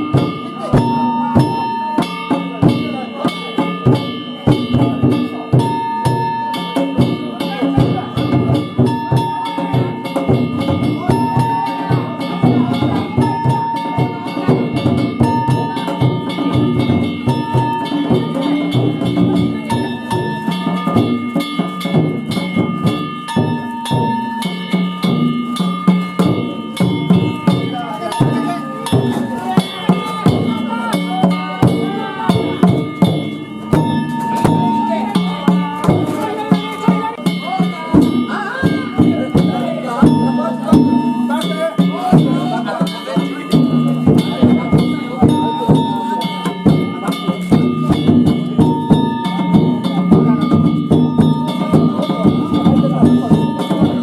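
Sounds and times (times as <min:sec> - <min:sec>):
hand gongs ringing: 0:00.0 - 0:54.0
taiko drums: 0:00.0 - 0:54.0.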